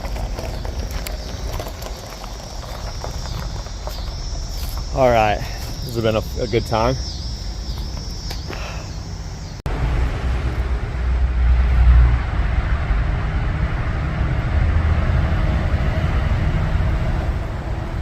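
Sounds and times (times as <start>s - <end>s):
motor vehicle rumbling: 0.0s - 18.0s.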